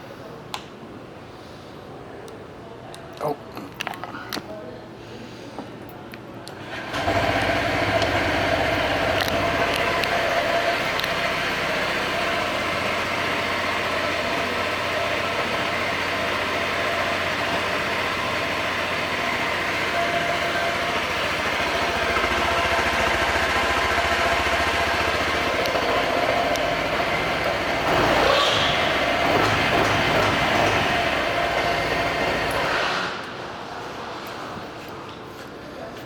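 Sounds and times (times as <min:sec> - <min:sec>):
scooter engine idling: 0:06.7 - 0:32.8.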